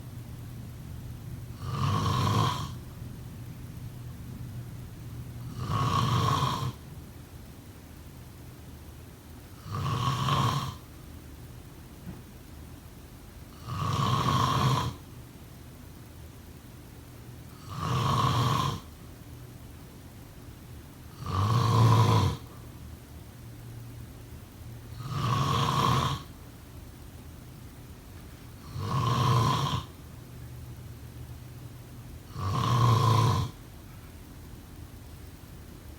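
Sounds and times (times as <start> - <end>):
person snoring: 1.5 - 2.8, 5.4 - 6.8, 9.6 - 10.8, 13.6 - 15.0, 17.6 - 18.9, 21.2 - 22.5, 25.0 - 26.3, 28.6 - 29.9, 32.3 - 33.6.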